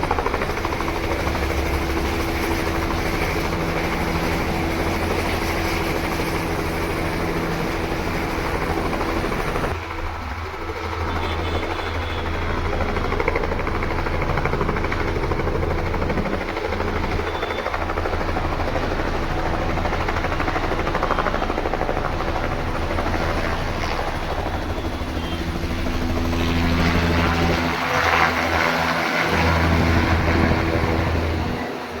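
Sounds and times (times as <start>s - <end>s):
helicopter rotor and engine drone: 0.0s - 32.0s.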